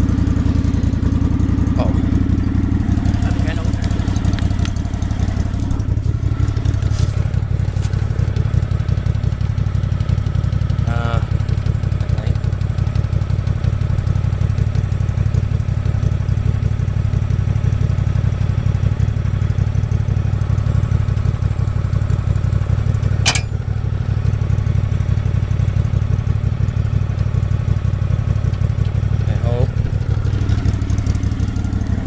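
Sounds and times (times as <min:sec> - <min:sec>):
garden tractor engine running: 0:00.0 - 0:32.0
sharp click: 0:23.3 - 0:23.6.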